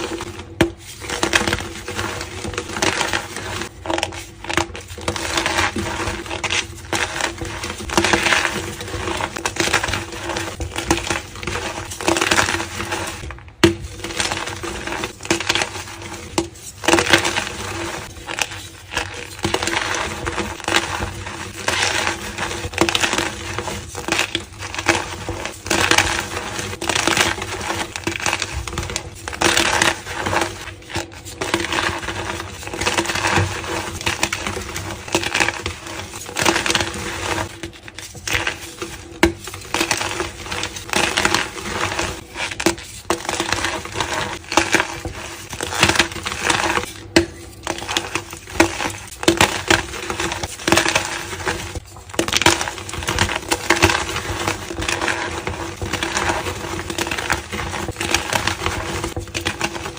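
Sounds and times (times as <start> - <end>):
chalk crunching and crackling: 0.0 - 59.9.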